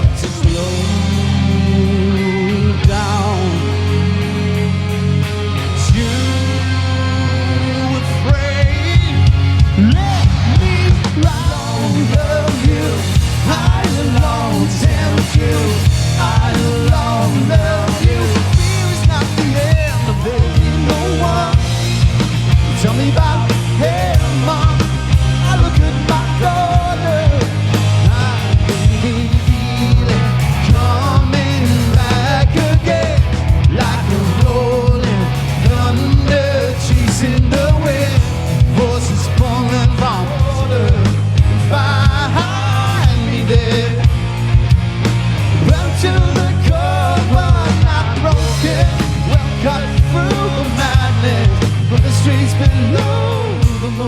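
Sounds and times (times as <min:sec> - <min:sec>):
bass: 0:00.0 - 0:54.0
drums: 0:00.0 - 0:54.0
electric guitar: 0:00.0 - 0:54.0
person singing: 0:05.6 - 0:22.0, 0:45.6 - 0:54.0.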